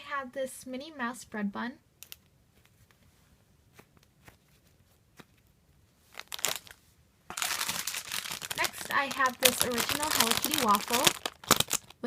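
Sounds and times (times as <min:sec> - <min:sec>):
toys crinkling and rustling: 0:03.8 - 0:12.0.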